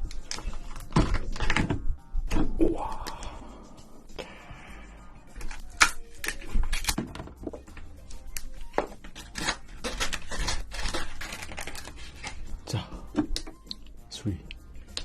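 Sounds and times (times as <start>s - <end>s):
crab shell clicking and crackling: 5.4s - 7.0s, 9.1s - 12.4s.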